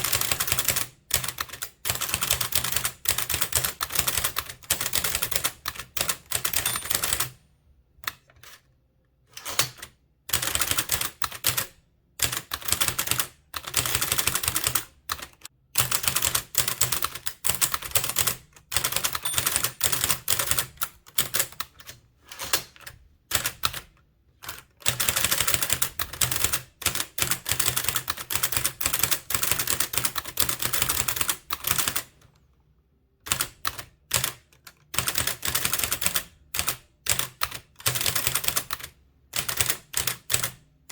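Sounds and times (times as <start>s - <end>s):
typewriter keystrokes: 0.0s - 7.4s, 9.4s - 23.8s.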